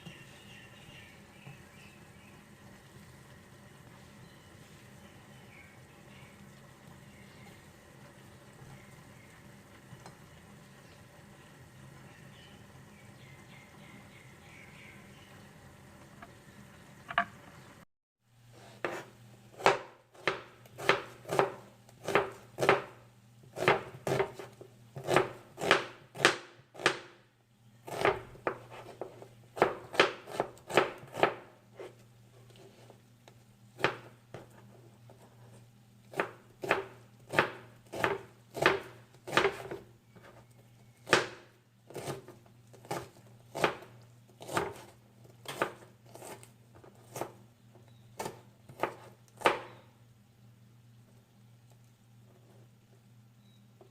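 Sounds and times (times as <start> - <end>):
knife chopping on cutting board: 18.8 - 23.0, 48.2 - 49.8.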